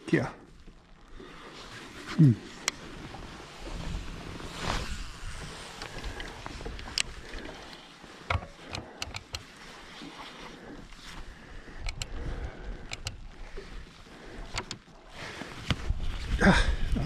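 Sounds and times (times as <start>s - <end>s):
wind and rain hiss: 1.1s - 17.0s
fishing gear clicking and knocking: 5.0s - 9.6s, 11.7s - 13.4s, 14.3s - 15.0s.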